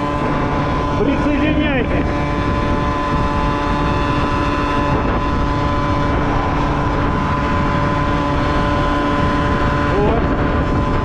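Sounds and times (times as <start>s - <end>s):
moped engine droning: 0.0s - 11.0s
wind and road noise: 0.0s - 11.0s.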